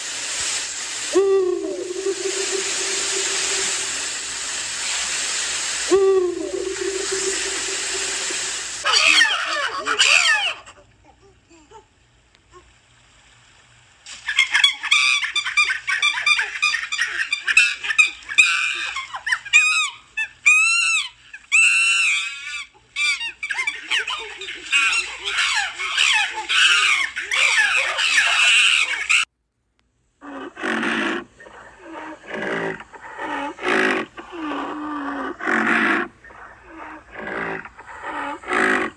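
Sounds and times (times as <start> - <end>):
lower repeated animal calls: 1.1 - 4.4, 5.9 - 10.4, 30.2 - 38.9
rapid high animal calls: 1.1 - 4.4, 5.9 - 10.6, 17.5 - 29.3, 30.2 - 38.9.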